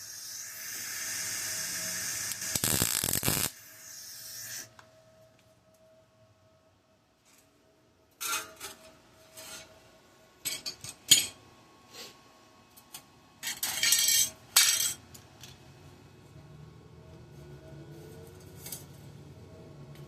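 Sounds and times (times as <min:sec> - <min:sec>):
metal scraping on metal: 0:08.2 - 0:09.8
metal pieces clinking and knocking: 0:13.4 - 0:15.6.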